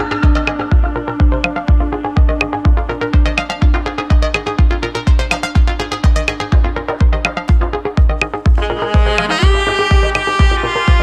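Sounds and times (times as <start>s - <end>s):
electronic dance music: 0.0s - 11.0s
heavy kick drum: 0.0s - 11.0s.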